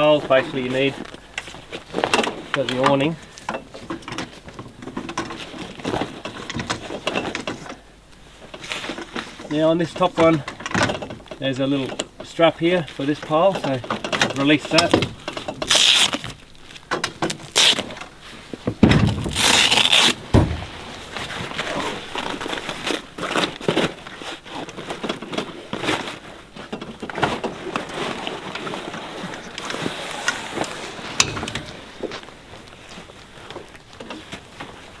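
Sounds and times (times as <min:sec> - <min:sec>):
awning poles scraping: 0:14.5 - 0:35.0
clicks and knocks of poles: 0:18.7 - 0:22.6.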